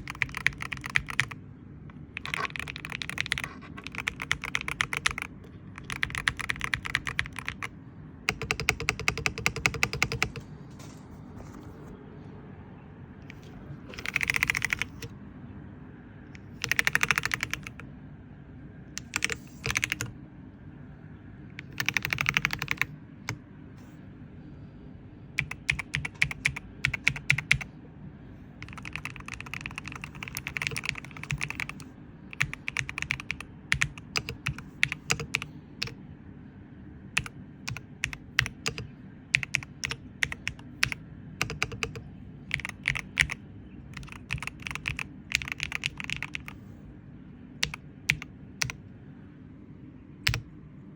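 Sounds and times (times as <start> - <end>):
mechanical keyboard typing: 0.0 - 7.7, 8.3 - 10.4, 13.9 - 15.1, 16.6 - 17.9, 19.0 - 20.2, 21.6 - 23.4, 25.4 - 27.7, 28.6 - 36.0, 37.2 - 43.4, 44.0 - 46.6, 47.6 - 48.8, 50.2 - 50.4.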